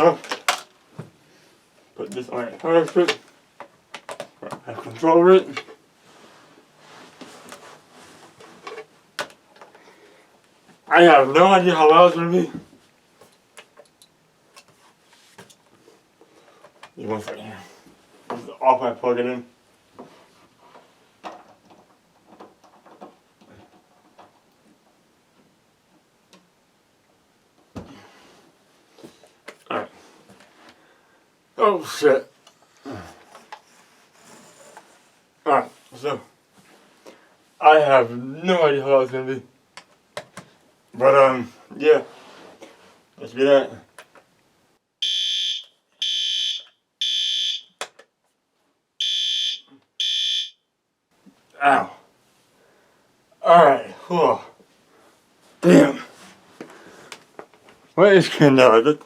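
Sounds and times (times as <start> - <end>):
hands handling plug and cords: 0.2 - 1.0, 2.0 - 4.8, 8.3 - 9.8
fire alarm horn blasts: 45.0 - 47.7, 49.0 - 50.6.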